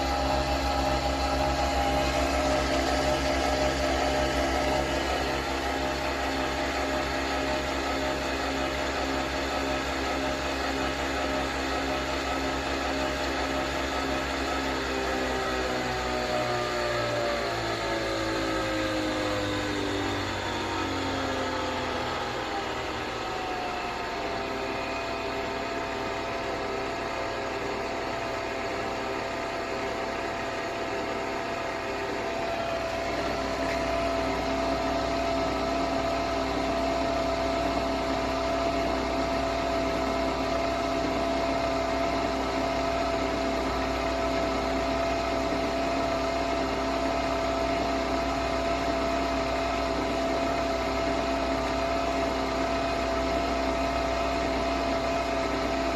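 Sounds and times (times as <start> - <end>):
low hum: 0.0 - 16.8
coffee machine motor whirring: 0.0 - 55.9.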